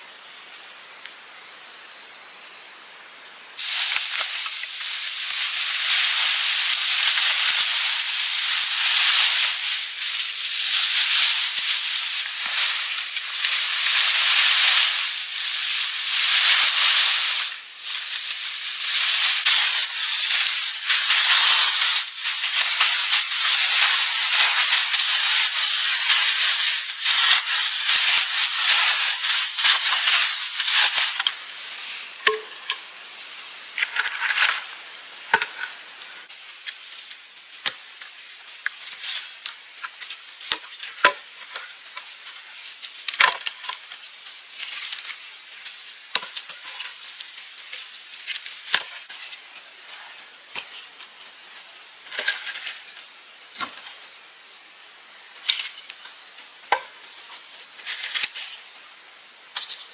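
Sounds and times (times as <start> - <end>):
wooden sticks knocking and snapping: 3.6 - 31.3
branches rustling: 3.6 - 32.8.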